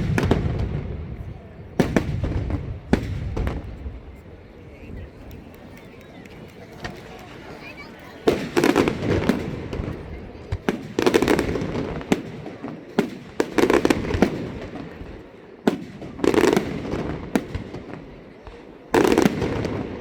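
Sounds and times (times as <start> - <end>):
fireworks bangs and crackling: 0.0 - 20.0.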